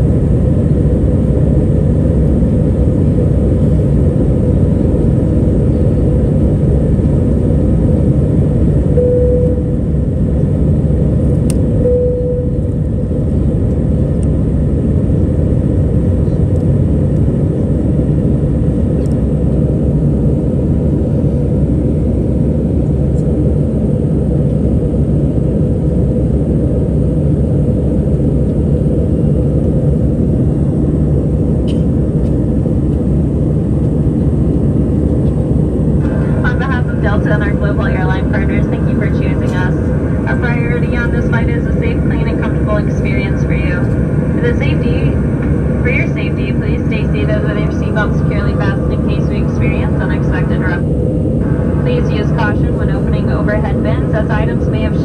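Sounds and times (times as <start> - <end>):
jet engine roar in cabin: 0.0 - 55.0
brief low tones: 9.0 - 9.9, 11.8 - 12.9.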